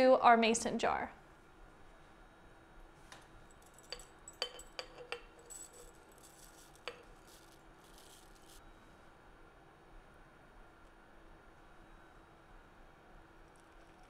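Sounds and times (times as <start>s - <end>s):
glass jar clinking: 3.6s - 8.6s
dry ingredients rustling: 5.3s - 8.6s.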